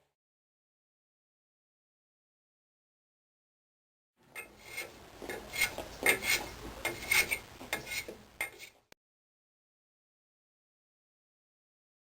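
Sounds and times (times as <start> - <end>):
metal scraping against metal: 4.4 - 8.8.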